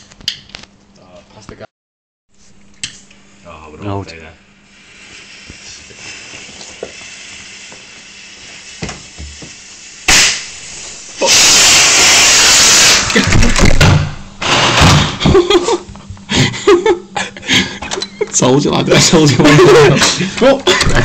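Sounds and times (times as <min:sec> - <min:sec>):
firework hissing: 0:04.6 - 0:13.6, 0:14.2 - 0:15.2
firework bursts: 0:04.7 - 0:15.2
firework crack: 0:04.8 - 0:15.2.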